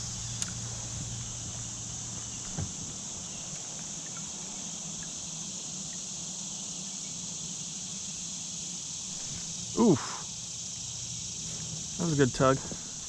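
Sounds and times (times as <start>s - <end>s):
faint low hum: 0.0s - 5.3s
insects calling: 0.0s - 13.0s.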